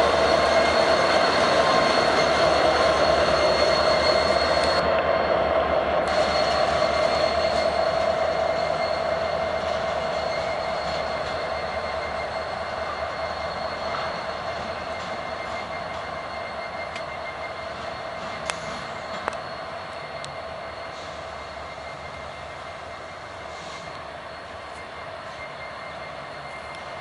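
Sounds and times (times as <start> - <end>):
train wheels rumbling: 0.0 - 27.0
wheels squealing: 0.0 - 27.0.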